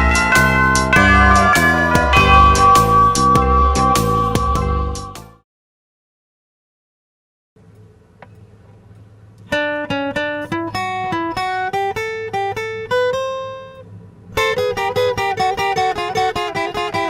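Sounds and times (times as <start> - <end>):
plucked guitar notes: 0.0 - 5.4, 14.4 - 17.0.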